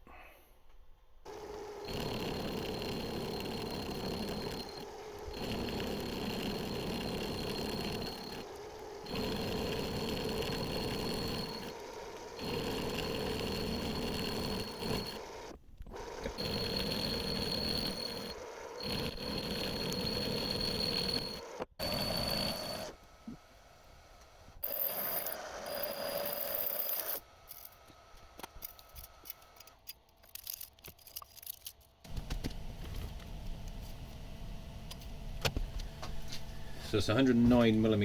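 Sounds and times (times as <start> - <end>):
cutting tool ringing tone: 1.3 - 22.9
metal lathe cutting steel: 1.3 - 22.9.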